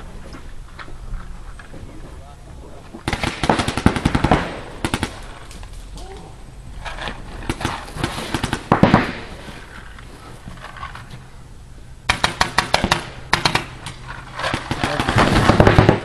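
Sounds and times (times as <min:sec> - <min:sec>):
paintball markers firing: 0:12.1 - 0:16.0.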